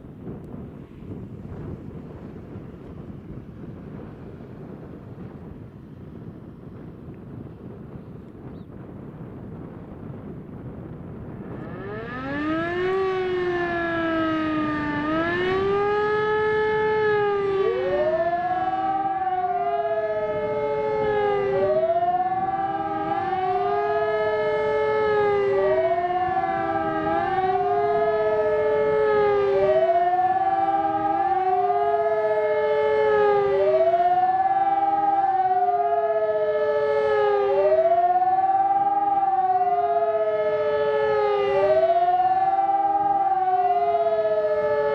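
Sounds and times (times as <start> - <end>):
electromechanical siren wailing: 10.9 - 44.9
electronic siren wailing: 11.3 - 44.9.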